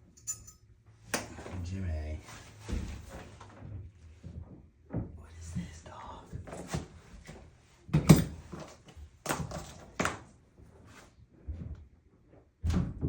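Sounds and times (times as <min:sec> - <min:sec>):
sharp knocks and thunks: 0:12.6 - 0:13.0.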